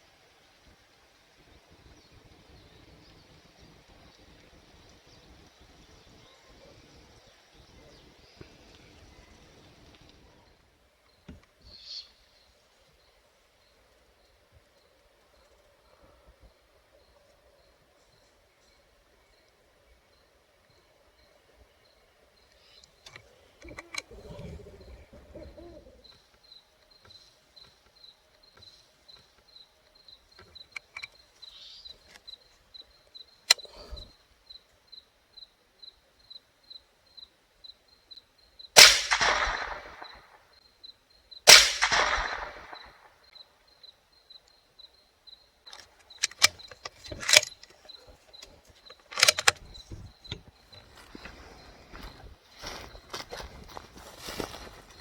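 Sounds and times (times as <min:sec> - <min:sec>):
rifle bolt clicks: 0:38.8 - 0:40.2, 0:41.5 - 0:42.9, 0:45.7 - 0:47.7, 0:48.4 - 0:49.8
rifle shots with echo: 0:38.8 - 0:40.4, 0:41.5 - 0:43.1.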